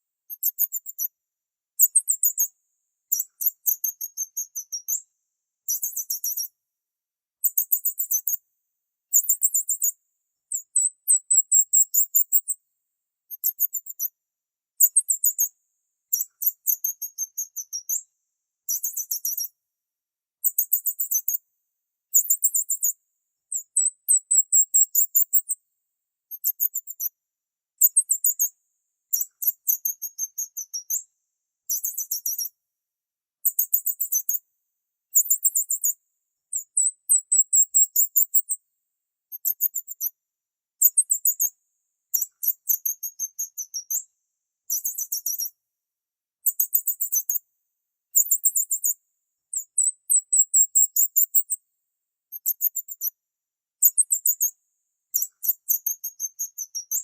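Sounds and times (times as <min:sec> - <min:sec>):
high-pitched bird chirping: 0:23.5 - 0:25.5, 0:36.6 - 0:38.5, 0:49.6 - 0:51.5.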